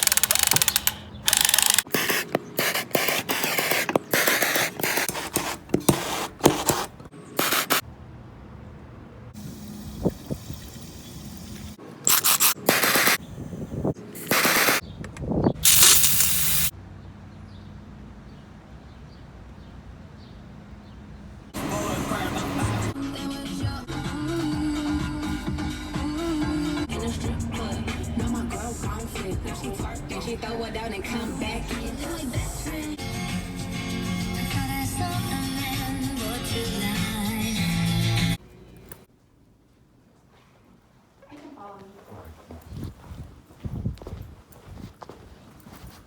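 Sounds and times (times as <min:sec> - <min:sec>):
hissing spray bursts: 0:09.4 - 0:13.3, 0:14.2 - 0:14.8, 0:15.6 - 0:16.7
person singing: 0:21.6 - 0:33.0, 0:34.2 - 0:38.2.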